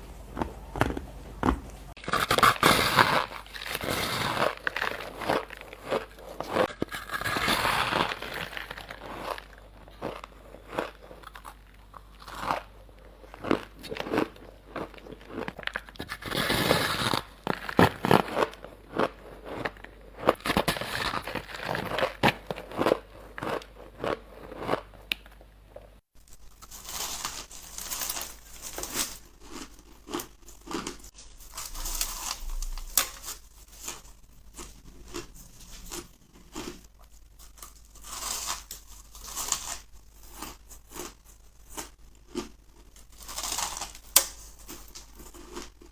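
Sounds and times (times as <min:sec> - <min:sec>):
person chewing ice: 0:00.3 - 0:45.9.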